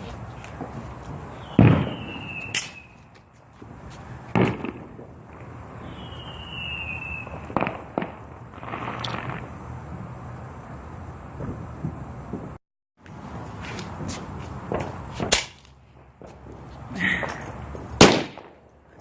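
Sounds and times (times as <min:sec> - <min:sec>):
firework cracks: 0:00.0 - 0:03.0, 0:03.6 - 0:10.2, 0:11.3 - 0:18.8
firework bangs: 0:00.0 - 0:10.2, 0:11.3 - 0:19.0
firework crackling: 0:00.0 - 0:19.0
falling firework whistles: 0:00.6 - 0:10.2.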